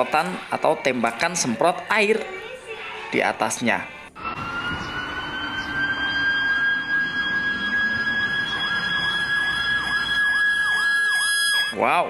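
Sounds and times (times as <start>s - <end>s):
toy siren wailing: 4.2s - 11.8s.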